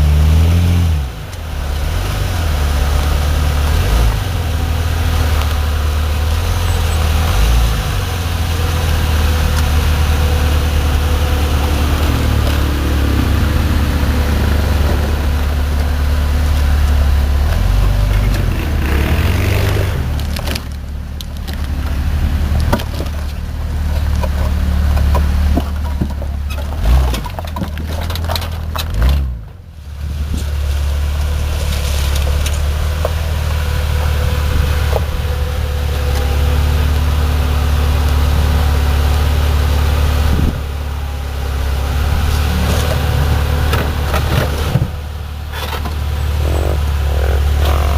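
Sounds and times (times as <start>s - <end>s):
car engine running: 0.0s - 47.9s
sharp cracks and knocks: 19.5s - 22.0s, 22.6s - 29.6s.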